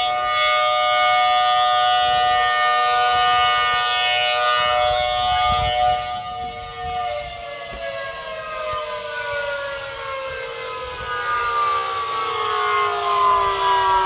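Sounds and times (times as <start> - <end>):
warning siren winding down: 0.0 - 14.0.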